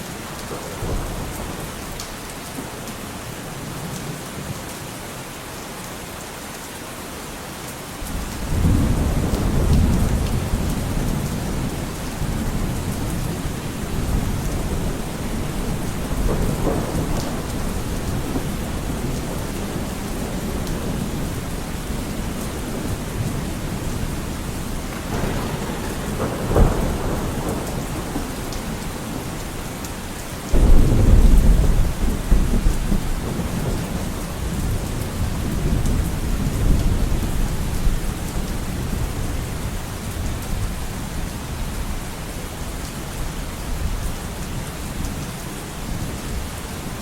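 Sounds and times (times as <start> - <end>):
steady rain falling: 0.0 - 47.0
low thunder rumble: 8.1 - 41.9
thunder crack: 8.5 - 29.9, 30.5 - 37.2.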